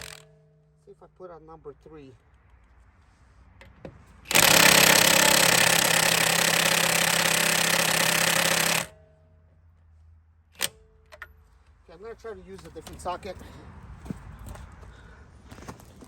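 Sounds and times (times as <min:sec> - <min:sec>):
impact wrench hammering: 0:00.0 - 0:00.5, 0:03.6 - 0:09.2
sharp click: 0:10.6 - 0:11.3.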